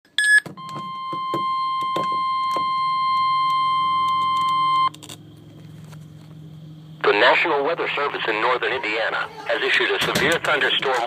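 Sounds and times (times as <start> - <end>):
data tone burst: 0.2 - 4.9
high-pitched alarm tone: 0.2 - 5.0
low hum: 0.6 - 11.0.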